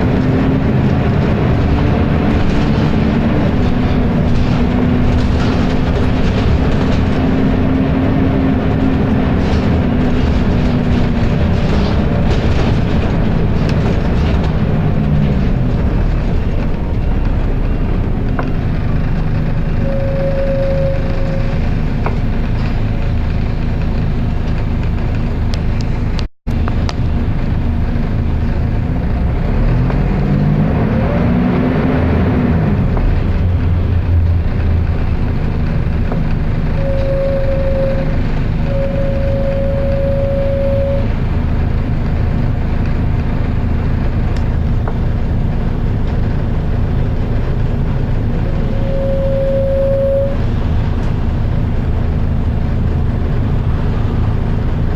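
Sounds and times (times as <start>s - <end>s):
bus cooling fan and diesel engine: 0.0s - 54.9s
short high whine: 19.8s - 21.6s, 36.7s - 41.2s, 48.4s - 50.5s.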